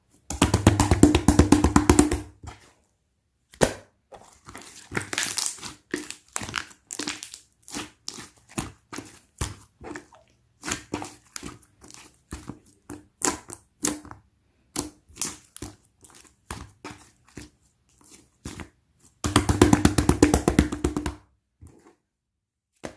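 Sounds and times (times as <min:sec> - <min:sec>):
rapid popping of slime: 0:00.3 - 0:02.4, 0:18.5 - 0:21.2
slime squished by hand: 0:03.6 - 0:14.1, 0:14.7 - 0:20.4.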